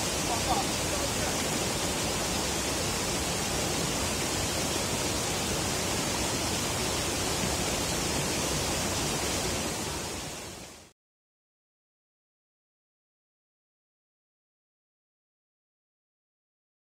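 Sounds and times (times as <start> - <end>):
steady rushing noise: 0.0 - 10.9.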